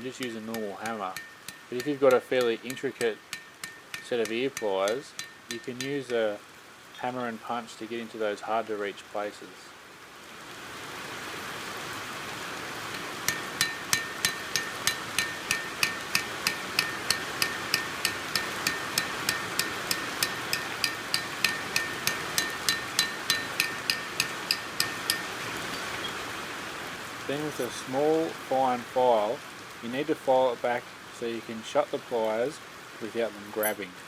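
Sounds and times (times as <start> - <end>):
hammer tapping metal: 0.2 - 6.3, 12.9 - 26.2, 33.6 - 33.8.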